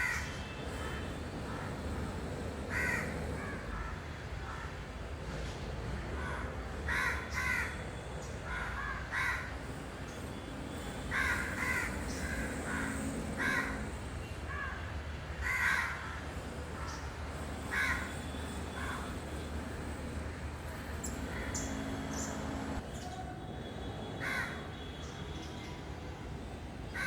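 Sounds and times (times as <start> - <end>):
steady low hum: 16.0 - 22.8.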